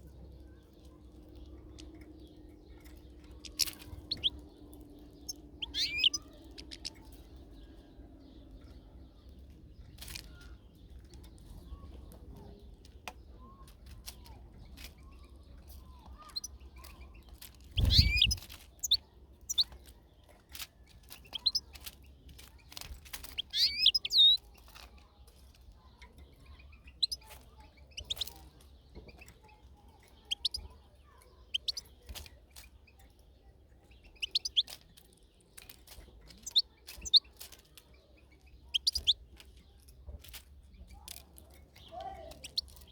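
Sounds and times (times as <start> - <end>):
goldfinch chirping: 1.6 - 7.1, 16.2 - 19.8, 21.2 - 21.7, 23.3 - 24.5, 26.6 - 29.3, 29.9 - 30.8, 31.4 - 32.2, 33.8 - 34.9, 36.3 - 37.4, 38.7 - 39.3, 41.9 - 42.9.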